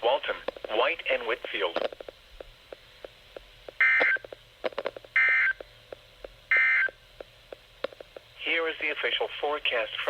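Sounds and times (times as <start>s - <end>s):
faint radio crackle clicks: 0.3s - 6.4s, 7.2s - 8.3s.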